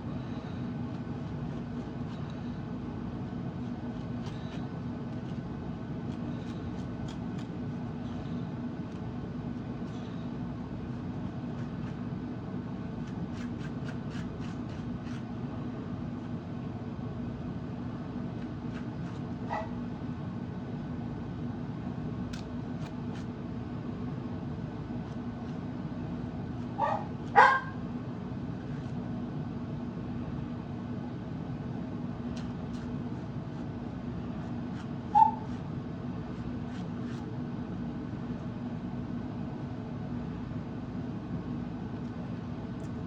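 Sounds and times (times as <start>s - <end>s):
steady low hum: 0.0s - 43.0s
dog barking: 19.5s - 19.8s, 26.8s - 27.8s, 35.1s - 35.5s.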